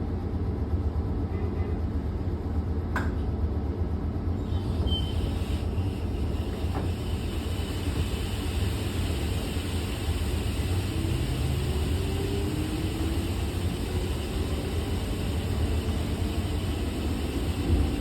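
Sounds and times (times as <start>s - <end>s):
electric train rasping noise: 4.4s - 18.0s.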